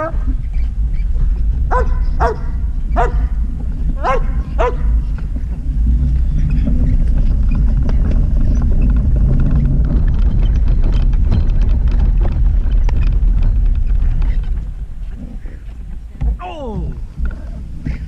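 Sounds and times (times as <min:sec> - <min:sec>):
steady low rumble: 0:00.0 - 0:18.0
faint clicks and knocks: 0:03.0 - 0:16.4.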